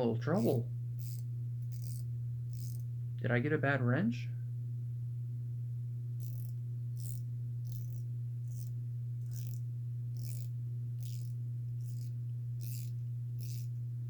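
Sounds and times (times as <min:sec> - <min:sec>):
steady low hum: 0:00.0 - 0:14.0
ratchet wrench clicks: 0:00.4 - 0:02.9, 0:06.2 - 0:09.6, 0:10.2 - 0:13.8.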